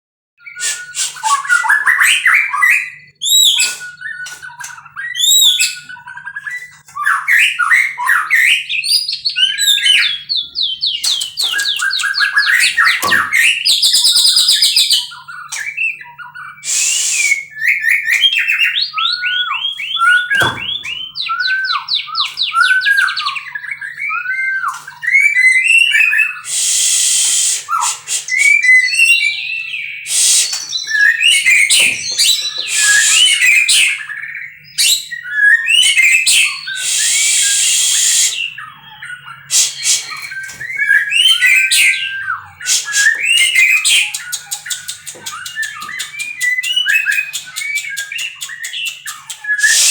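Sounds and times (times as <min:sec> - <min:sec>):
bird singing whistled song: 0:00.4 - 0:49.9
harsh bird notes: 0:09.4 - 0:15.1.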